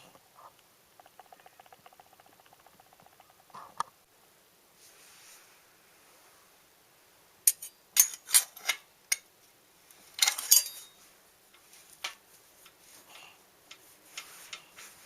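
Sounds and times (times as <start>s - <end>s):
metallic clicks and clinks: 10.1s - 11.0s.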